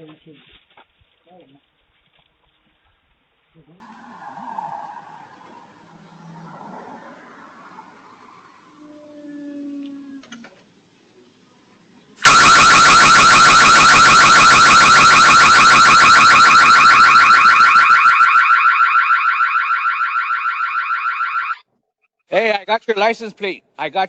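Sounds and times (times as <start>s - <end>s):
warbling alarm siren: 3.8s - 10.2s, 12.2s - 21.6s.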